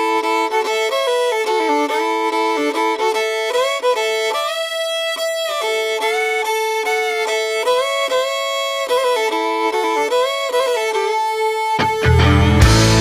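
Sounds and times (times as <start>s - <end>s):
fiddle playing country melody: 0.0s - 13.0s.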